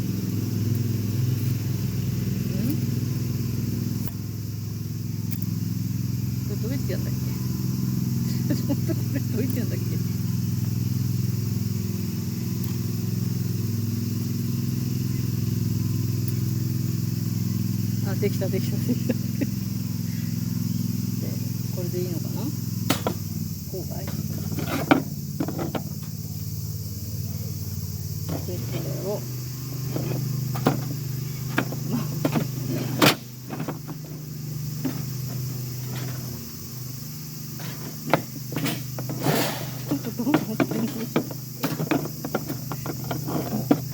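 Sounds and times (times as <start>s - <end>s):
engine idling: 0.0s - 43.9s
metal parts knocking and clicking: 37.6s - 43.9s.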